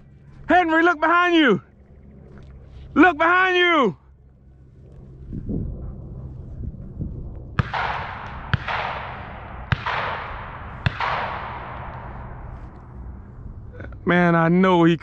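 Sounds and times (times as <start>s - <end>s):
shotgun shots echoing: 7.6s - 12.5s.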